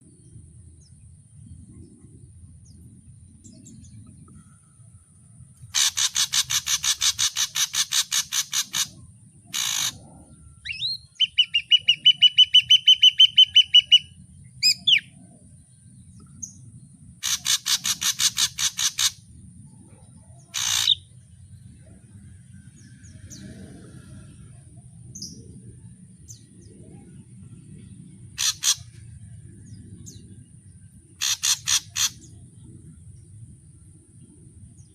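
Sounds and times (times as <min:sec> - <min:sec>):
bird harsh rattling song: 0:05.6 - 0:15.1, 0:16.1 - 0:19.3, 0:20.4 - 0:21.2, 0:28.2 - 0:32.7
bird whistled trill: 0:10.6 - 0:15.1.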